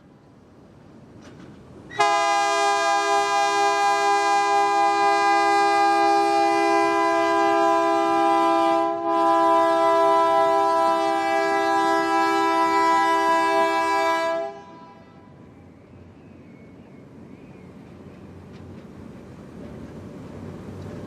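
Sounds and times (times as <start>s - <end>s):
locomotive air horn blast: 1.9s - 15.4s.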